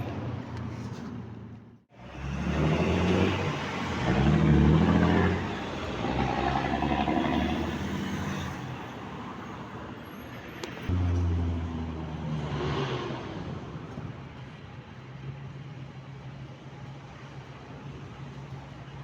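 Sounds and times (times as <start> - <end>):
steady road hum: 0.0 - 19.0
vehicle engines passing: 0.0 - 19.0.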